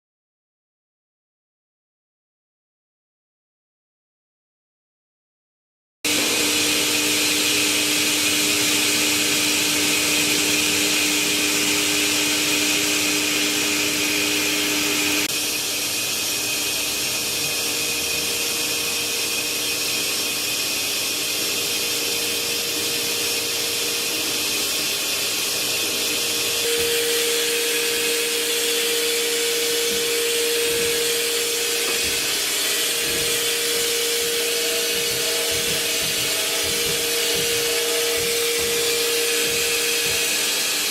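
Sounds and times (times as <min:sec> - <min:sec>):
lathe whirring: 0:06.1 - 0:40.9.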